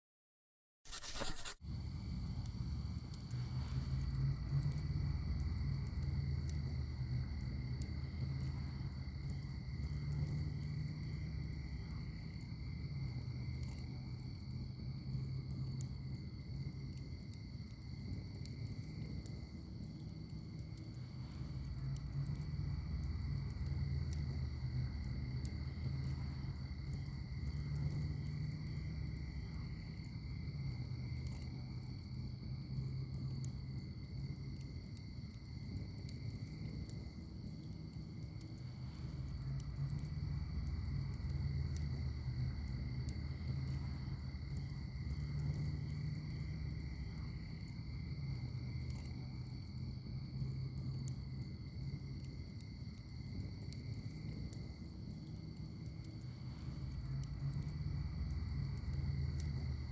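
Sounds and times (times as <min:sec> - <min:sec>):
insect drone: 0:00.9 - 0:59.9
wood fire crackling and popping: 0:00.9 - 0:59.9.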